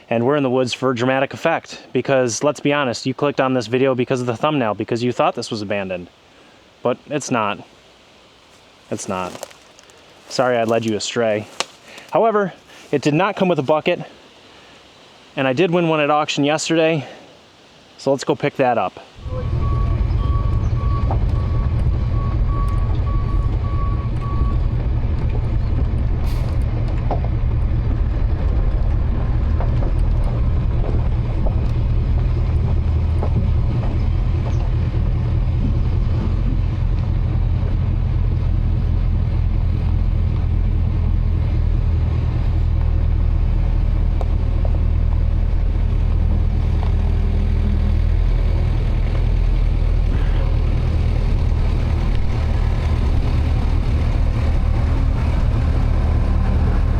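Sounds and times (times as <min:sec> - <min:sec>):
vehicle engine droning: 0:19.2 - 0:56.9.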